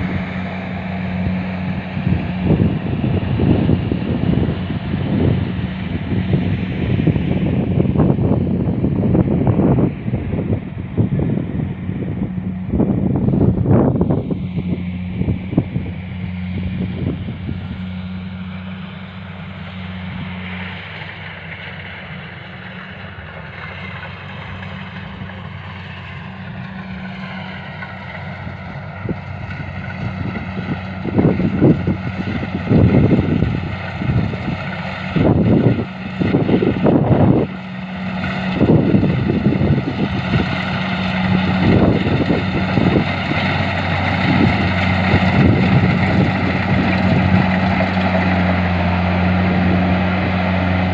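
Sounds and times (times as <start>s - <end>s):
wind buffeting microphone: 0.0s - 20.8s, 23.7s - 50.9s
engine humming: 0.0s - 50.9s.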